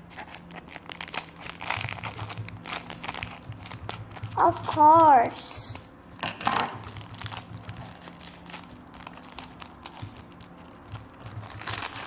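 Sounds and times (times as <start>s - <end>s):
toy wrapper crinkling: 0.2s - 5.2s, 6.8s - 12.0s.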